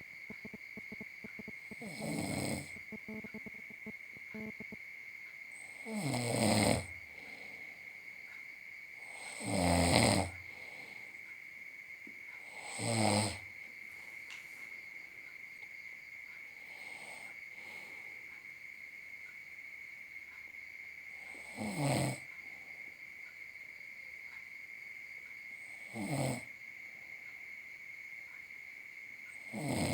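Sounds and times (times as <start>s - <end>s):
man snoring: 1.6s - 3.3s, 5.6s - 7.0s, 9.0s - 10.4s, 12.5s - 13.4s, 21.3s - 22.2s, 25.8s - 26.5s, 29.4s - 29.9s
steady high-pitched tone: 2.6s - 4.8s
quiet breathing: 5.5s - 9.5s, 10.2s - 11.5s, 16.3s - 18.8s, 22.2s - 23.3s.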